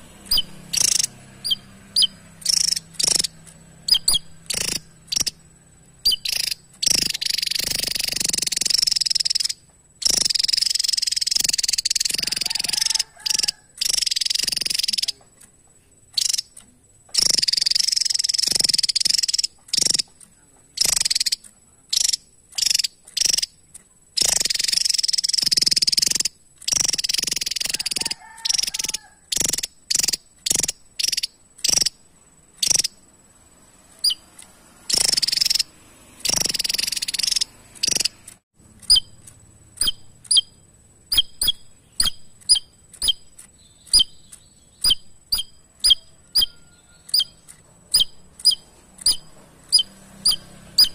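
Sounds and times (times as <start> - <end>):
bird short sharp chirps: 0.2 - 5.4, 6.0 - 15.2, 39.8 - 50.9
bird song phrases: 0.2 - 31.9, 38.9 - 50.9.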